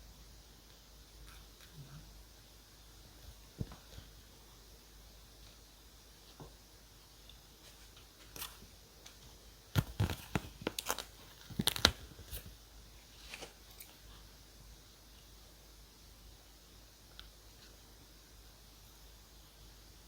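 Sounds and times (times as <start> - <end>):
paper crackling and tearing: 9.8 - 12.5.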